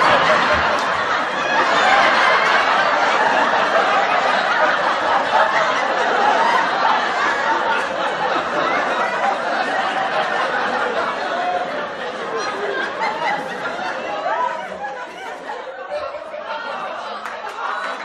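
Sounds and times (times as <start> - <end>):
applause: 0.0 - 1.2, 17.2 - 18.0
studio audience laughter: 0.0 - 18.0.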